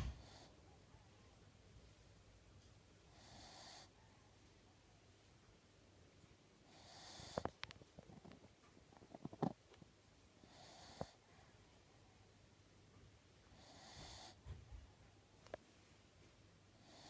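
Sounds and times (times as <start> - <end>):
pet snoring faintly: 3.1 - 4.1, 6.7 - 7.7, 10.4 - 11.3, 13.5 - 14.5, 16.8 - 17.0.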